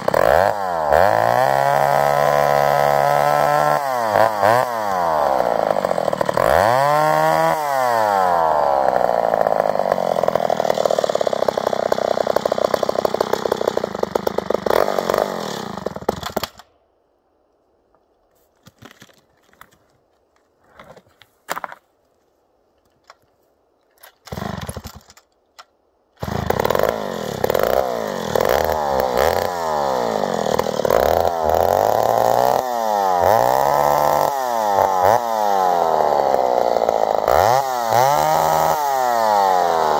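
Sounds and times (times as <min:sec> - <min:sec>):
chainsaw revving in blips: 0:00.0 - 0:16.6, 0:24.3 - 0:25.0, 0:26.2 - 0:39.9
chainsaw cutting wood: 0:00.0 - 0:16.7, 0:24.1 - 0:25.3, 0:26.2 - 0:39.9.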